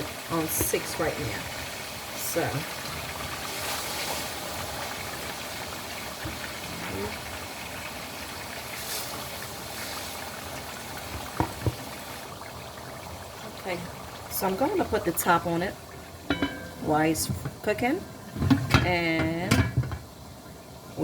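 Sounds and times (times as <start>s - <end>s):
chicken frying in hot oil: 0.0s - 21.0s.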